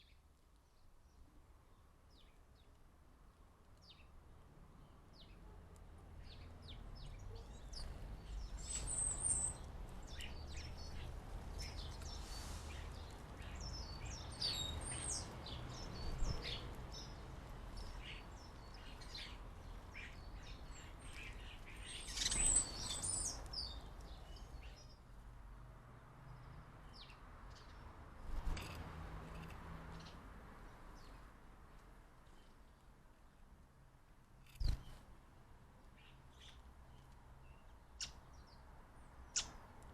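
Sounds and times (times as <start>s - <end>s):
small birds chirping: 3.7s - 25.2s, 34.4s - 35.1s, 35.8s - 39.9s.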